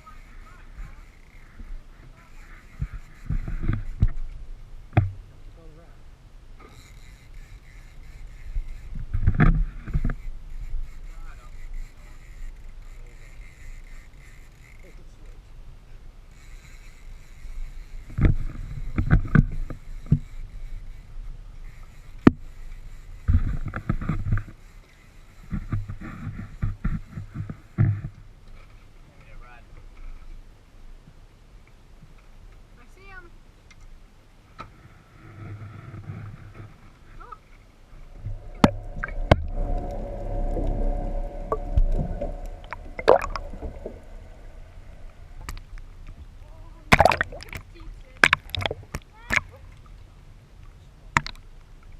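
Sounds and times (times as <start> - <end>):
steady low rumble: 37.8 - 46.5
boat engine running: 37.9 - 46.1.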